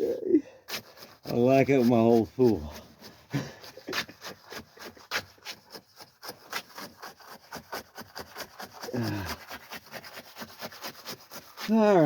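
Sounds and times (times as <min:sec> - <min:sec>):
hand tool scraping concrete: 0:00.0 - 0:12.0
person grunting: 0:08.9 - 0:09.4.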